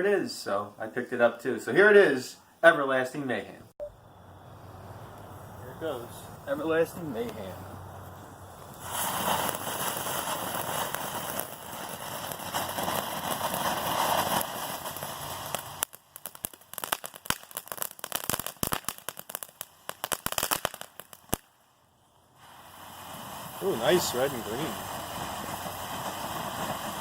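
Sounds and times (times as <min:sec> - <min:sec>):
firework fountain hissing: 0:04.0 - 0:21.5, 0:22.2 - 0:27.0
firework crackling pops: 0:05.1 - 0:21.7, 0:22.4 - 0:27.0.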